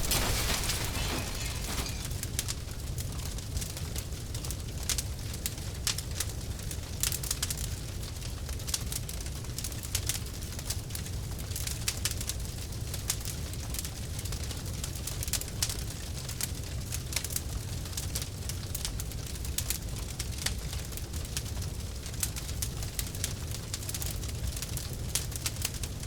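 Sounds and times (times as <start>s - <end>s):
fire rumbling: 0.0s - 11.0s
fire crackling and popping: 0.0s - 26.0s.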